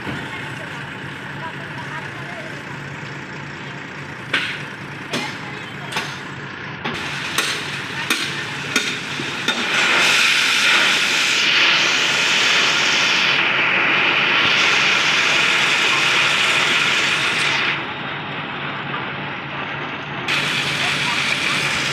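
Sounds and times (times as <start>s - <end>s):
heavy diesel engine running: 0.0s - 21.9s
steady rushing noise: 8.7s - 21.9s.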